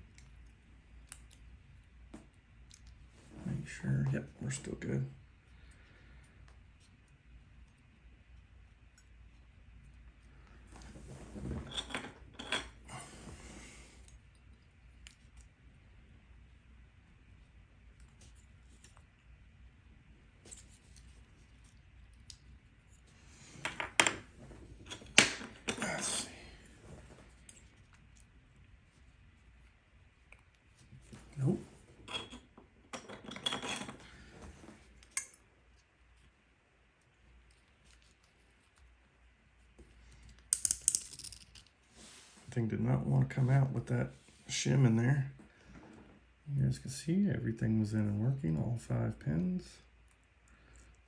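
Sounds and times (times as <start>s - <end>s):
metal lock parts clinking: 32.1s - 34.0s.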